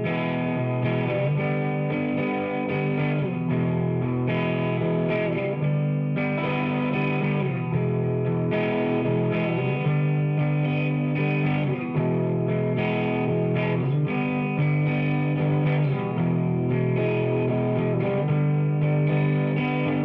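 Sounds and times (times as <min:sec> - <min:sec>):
distorted electric guitar chords: 0:00.0 - 0:20.0.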